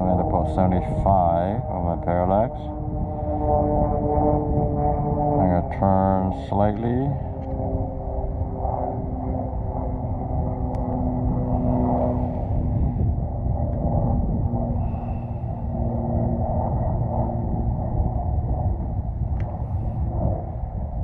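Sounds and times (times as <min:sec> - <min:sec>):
faint hum: 0:00.0 - 0:21.0
wind on microphone: 0:00.0 - 0:21.0.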